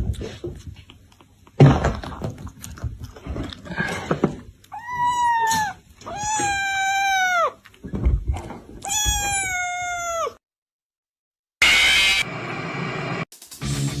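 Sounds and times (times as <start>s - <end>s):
cat meowing: 4.7s - 7.6s, 8.8s - 10.4s.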